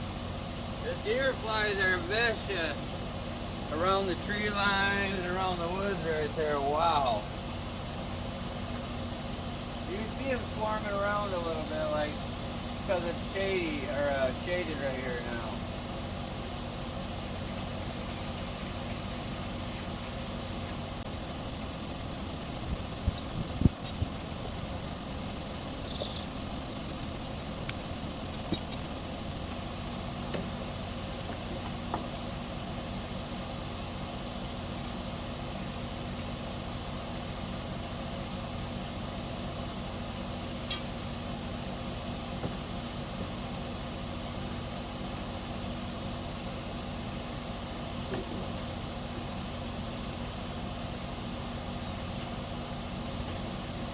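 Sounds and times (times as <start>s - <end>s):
engine running: 0.0s - 34.1s.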